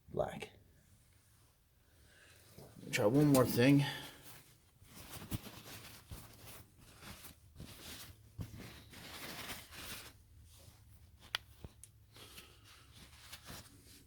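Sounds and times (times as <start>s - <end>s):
cloth wiping and rustling: 2.5s - 14.0s.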